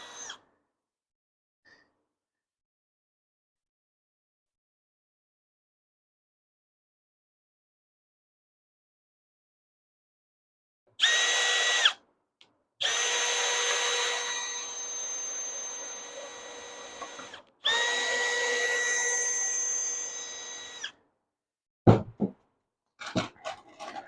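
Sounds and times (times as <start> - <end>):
cordless drill whining: 0.0 - 0.4, 11.0 - 12.0, 12.8 - 21.0
sharp knocks: 21.9 - 22.4.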